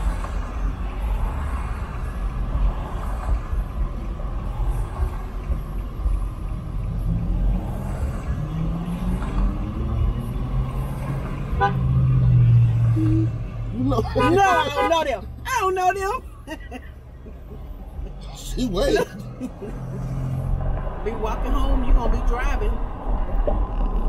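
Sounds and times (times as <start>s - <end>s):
road rumble inside truck cab: 0.0s - 24.0s
car horn honking: 11.5s - 12.1s, 14.2s - 16.2s.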